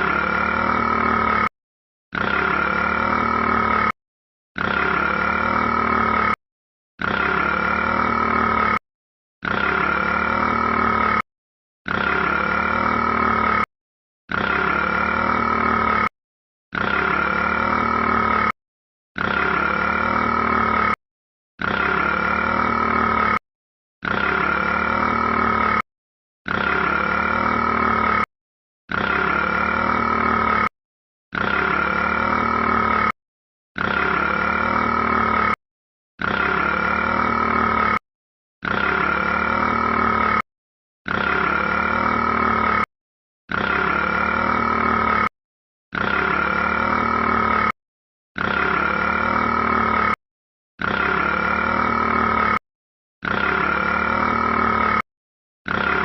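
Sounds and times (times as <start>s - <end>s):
rat burping: 0.0s - 1.5s, 2.1s - 4.0s, 4.6s - 6.4s, 7.0s - 8.8s, 9.4s - 11.2s, 11.9s - 13.7s, 14.3s - 18.6s, 19.2s - 21.0s, 21.6s - 23.4s, 24.0s - 25.8s, 26.5s - 28.3s, 28.9s - 30.7s, 31.3s - 33.2s, 33.8s - 35.6s, 36.2s - 38.0s, 38.6s - 40.4s, 41.1s - 42.9s, 43.5s - 45.3s, 45.9s - 47.8s, 48.4s - 50.2s, 50.8s - 52.6s, 53.3s - 55.0s, 55.7s - 56.0s.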